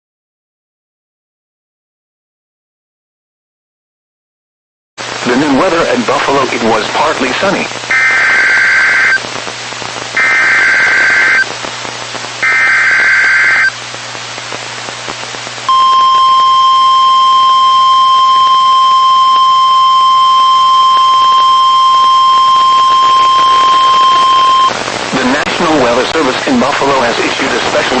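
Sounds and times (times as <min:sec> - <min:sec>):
steady warning alarm tone: 0:07.9 - 0:09.2, 0:10.2 - 0:11.4, 0:12.4 - 0:13.7, 0:15.7 - 0:24.7
two-tone digital buzzing bursts: 0:07.9 - 0:09.2, 0:10.2 - 0:11.5, 0:12.4 - 0:13.7, 0:15.7 - 0:24.7.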